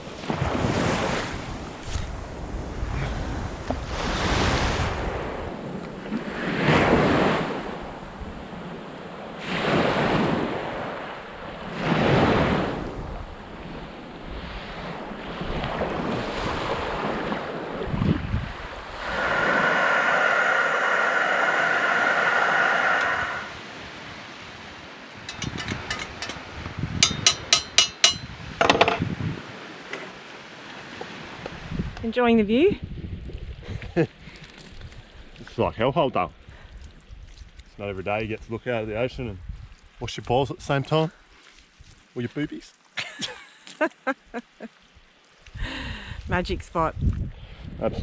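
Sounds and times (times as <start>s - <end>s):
wind on microphone: 11.9s - 23.6s, 31.5s - 33.9s, 46.1s - 48.0s.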